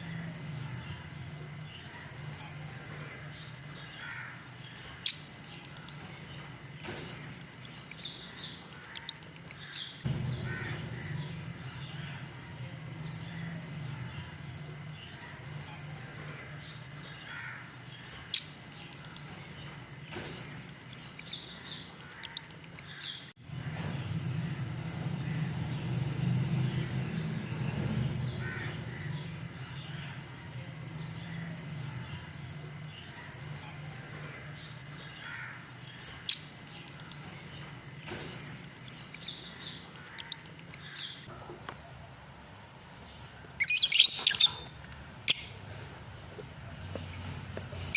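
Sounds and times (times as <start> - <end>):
steady low hum: 0.0 - 22.7
lovebirds chirping and squawking: 0.0 - 25.8, 26.7 - 47.9.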